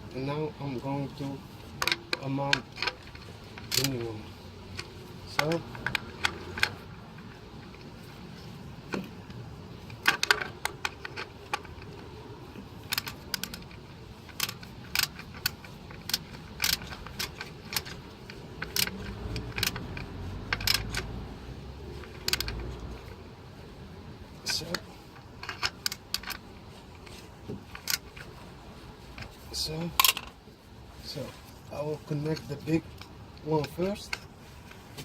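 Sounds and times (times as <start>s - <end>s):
metallic clicks of hand tools: 1.8s - 7.9s, 12.8s - 21.2s, 21.9s - 23.1s, 24.4s - 28.3s.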